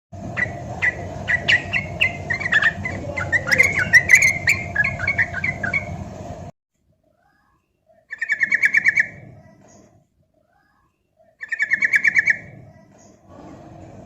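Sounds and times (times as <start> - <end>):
steady background hum: 0.2 - 14.0
bird singing chirping notes: 0.4 - 6.0.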